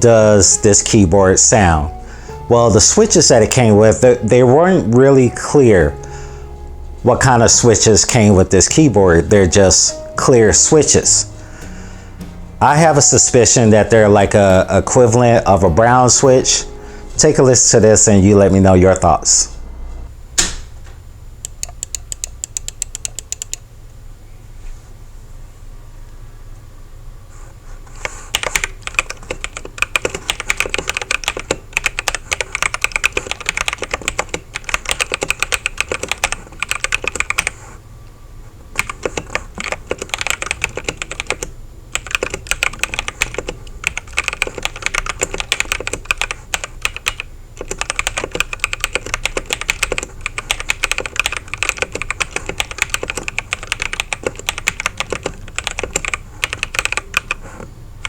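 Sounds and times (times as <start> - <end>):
fast mechanical keyboard typing: 21.5 - 23.6, 28.0 - 37.6, 38.8 - 57.4.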